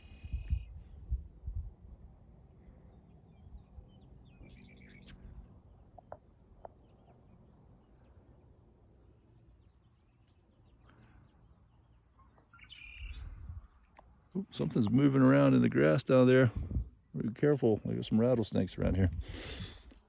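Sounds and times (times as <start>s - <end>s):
faint chirps: 0.0s - 15.7s
high insect trill: 0.0s - 20.0s
bird call: 12.2s - 13.4s.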